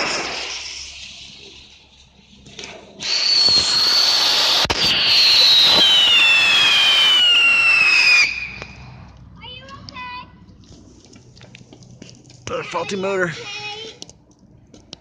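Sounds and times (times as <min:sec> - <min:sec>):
rocket motors hissing and whistling: 0:00.0 - 0:09.0
sharp pop: 0:03.4 - 0:06.0.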